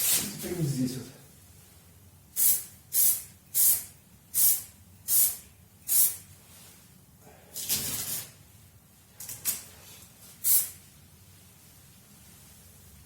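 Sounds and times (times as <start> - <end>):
spray hissing bursts: 2.4 - 6.2, 10.4 - 10.8.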